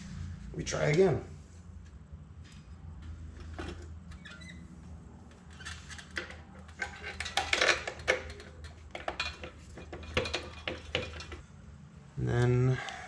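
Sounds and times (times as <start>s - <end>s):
metal tools clinking: 5.5s - 11.4s.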